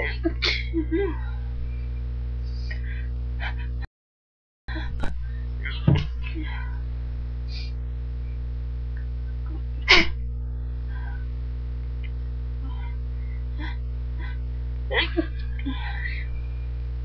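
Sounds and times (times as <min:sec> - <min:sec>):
steady electrical hum: 0:00.0 - 0:03.9, 0:04.7 - 0:17.0
person sneezing: 0:09.9 - 0:10.2.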